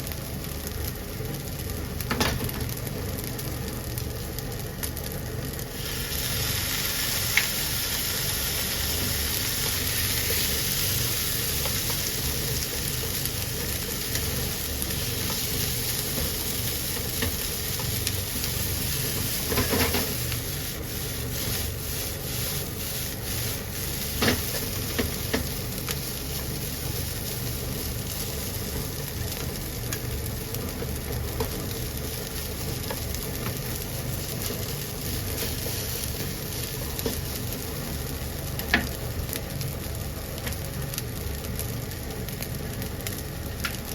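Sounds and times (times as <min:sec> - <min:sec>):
rice sizzling in hot oil: 0:00.0 - 0:43.9
knocks and scrapes against pan: 0:19.4 - 0:20.2.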